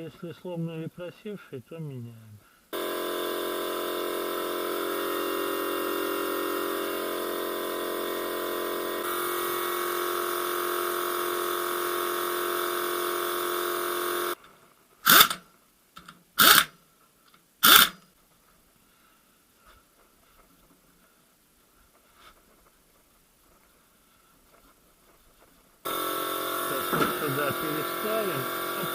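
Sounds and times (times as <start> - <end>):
small electric motor running: 2.8 - 14.4, 25.9 - 28.9.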